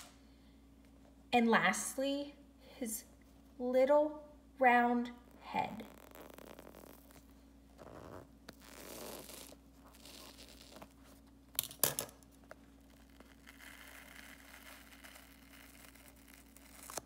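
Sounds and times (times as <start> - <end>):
scissors cutting foam: 12.9 - 17.0.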